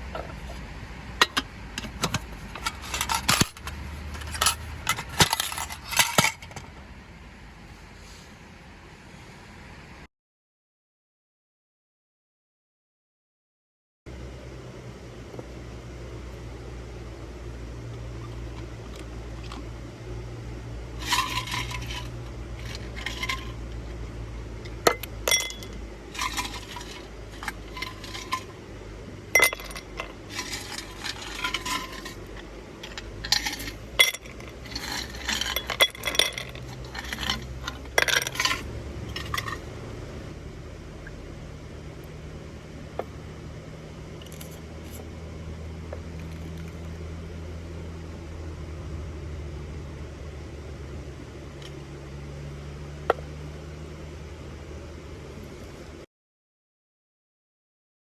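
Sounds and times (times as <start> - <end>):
steady low hum: 0.0 - 10.1, 14.1 - 56.0
small hard objects clinking: 1.2 - 6.7, 21.0 - 23.8, 24.7 - 28.6, 29.3 - 39.7.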